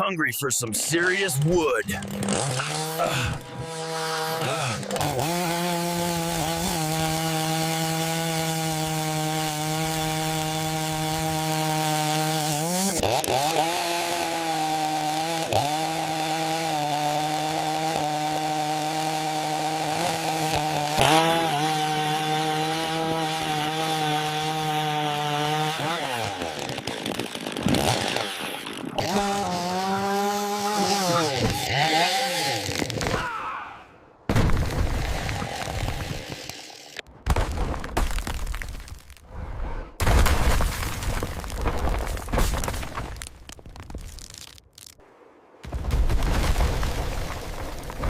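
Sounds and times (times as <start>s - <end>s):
chainsaw cutting wood: 0.8s - 33.2s, 34.3s - 37.0s.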